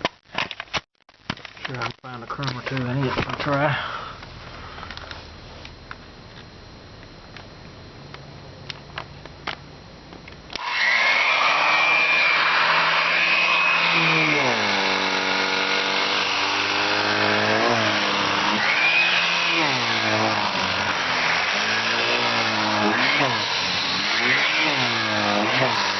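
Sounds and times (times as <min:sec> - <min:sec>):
vacuum cleaner whining: 0:10.5 - 0:25.9.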